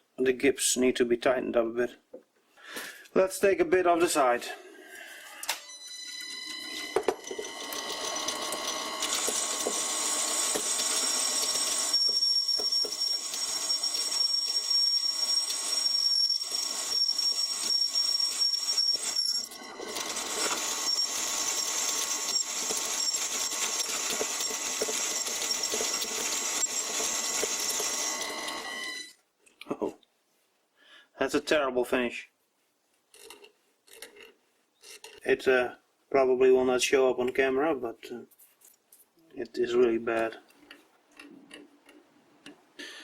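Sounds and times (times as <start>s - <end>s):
lathe cutting metal whine: 6.3s - 29.1s.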